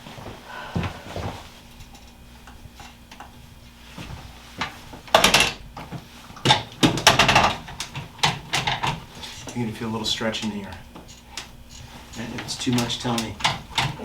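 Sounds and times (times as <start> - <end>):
rustling and scraping on a table: 3.6 - 7.6.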